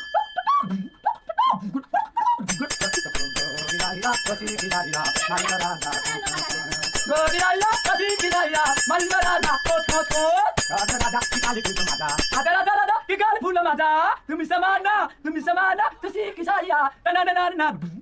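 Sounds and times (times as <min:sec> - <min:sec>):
small hand cymbals ringing: 0:02.5 - 0:12.6
person singing or chanting: 0:03.2 - 0:11.3.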